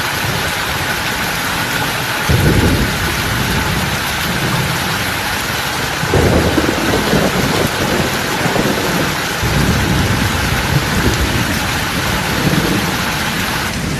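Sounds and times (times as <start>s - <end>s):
rushing water: 0.0s - 13.9s
low rumbling: 0.2s - 13.9s.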